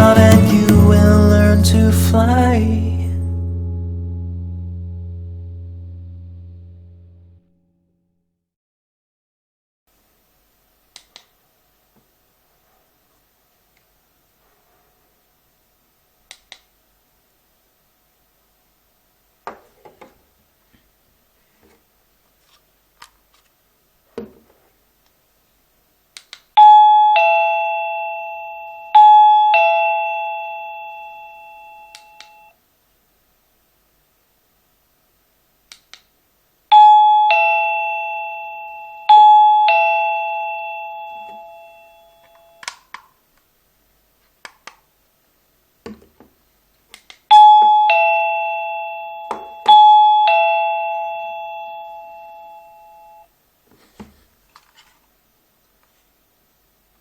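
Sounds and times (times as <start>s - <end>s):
doorbell ding-dong chime: 26.6s - 32.5s, 36.7s - 42.6s, 47.3s - 53.2s.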